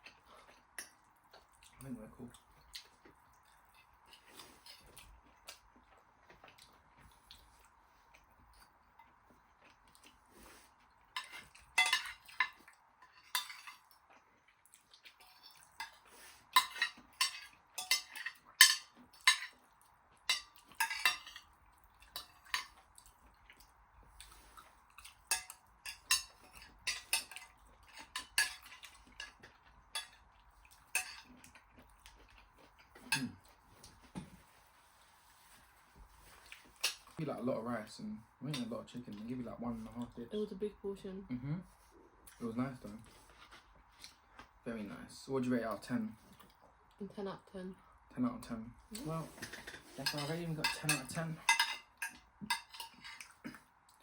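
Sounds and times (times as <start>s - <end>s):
cutlery clinking on plates: 11.2s - 13.9s, 15.2s - 19.6s, 20.3s - 22.8s, 25.0s - 30.2s, 30.8s - 31.5s, 49.4s - 53.6s.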